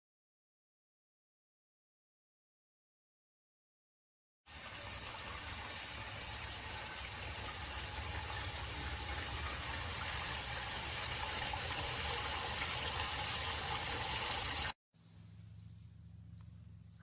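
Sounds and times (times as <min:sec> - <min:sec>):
waterfall fountain splashing: 0:04.5 - 0:14.7
low hum: 0:15.0 - 0:17.0.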